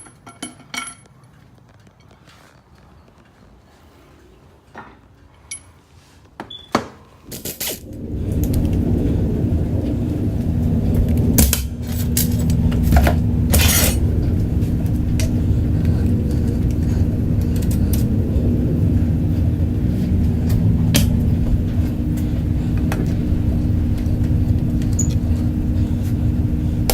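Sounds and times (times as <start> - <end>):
metallic clinks and knocks: 0.0 - 1.4
low machine hum: 7.7 - 26.9.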